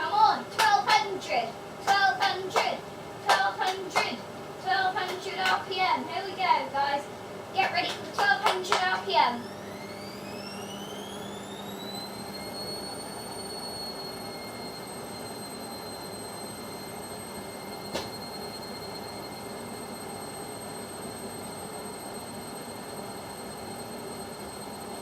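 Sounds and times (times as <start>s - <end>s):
washing machine spinning: 8.1s - 25.0s.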